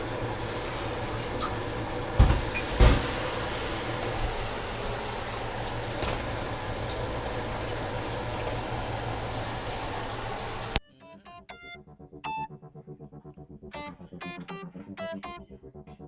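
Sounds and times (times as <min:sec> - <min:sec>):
kitchen appliance humming: 0:00.0 - 0:10.8
dull knocks: 0:02.2 - 0:03.2.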